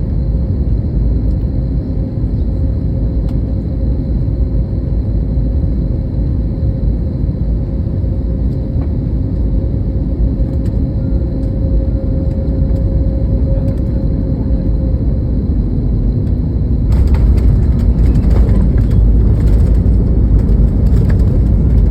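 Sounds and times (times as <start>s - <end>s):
faint jet whine: 0.0s - 21.9s
jet airliner landing rumble: 0.0s - 21.9s
rushing rattling noise: 16.9s - 21.9s.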